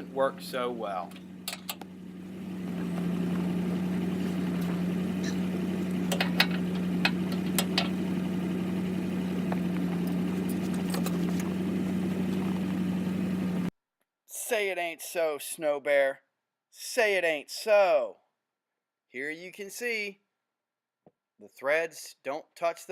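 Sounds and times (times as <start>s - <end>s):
engine idling: 0.0s - 13.7s.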